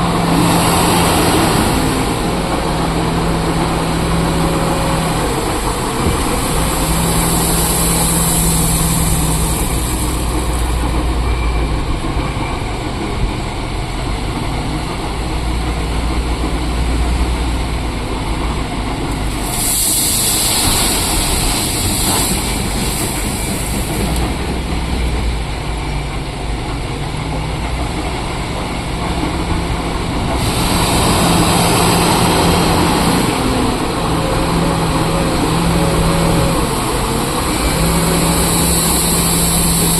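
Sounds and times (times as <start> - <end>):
heavy diesel engines running: 0.0 - 39.9
high hiss: 4.7 - 10.9, 19.2 - 24.4.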